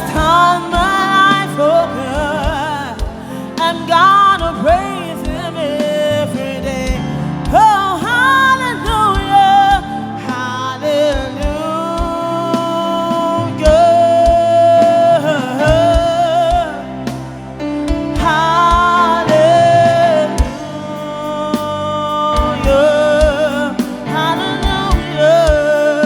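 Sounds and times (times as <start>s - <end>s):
low drum thumps: 0.0s - 3.3s, 15.6s - 21.1s, 22.4s - 25.8s
band accompaniment: 0.0s - 26.0s
person singing gospel: 0.0s - 26.0s.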